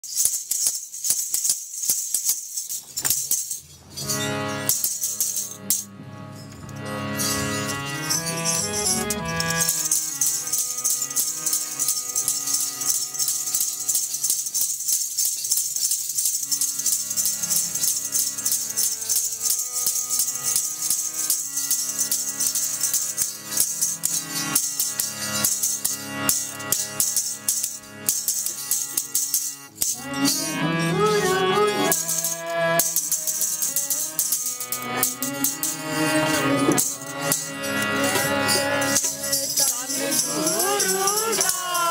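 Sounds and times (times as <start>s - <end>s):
fast jingling rattle: 0.0s - 41.9s
harmonium holding notes: 3.9s - 41.9s
person singing: 29.8s - 41.9s.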